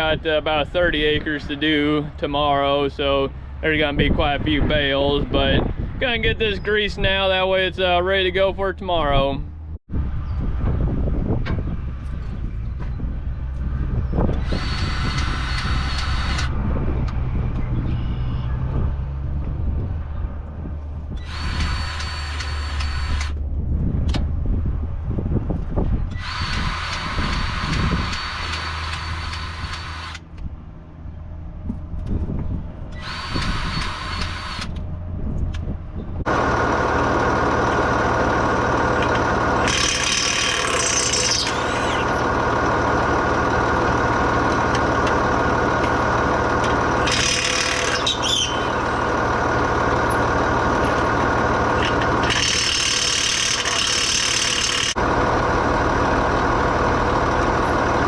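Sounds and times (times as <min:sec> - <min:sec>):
engine humming: 0:00.0 - 0:58.0
cordless grease gun running: 0:14.4 - 0:16.5, 0:21.2 - 0:23.3, 0:26.1 - 0:30.2, 0:33.0 - 0:34.7, 0:36.3 - 0:58.0.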